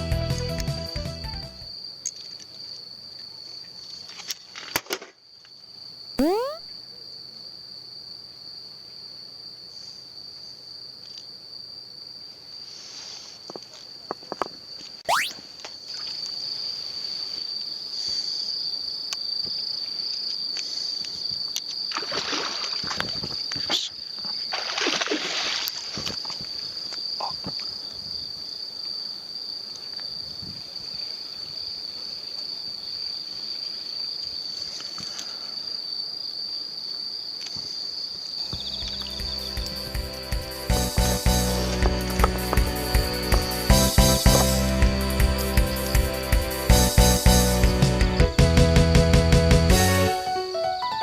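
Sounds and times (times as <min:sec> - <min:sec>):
insects trilling: 0:05.3 - 0:46.7
water splashes: 0:24.5 - 0:26.0.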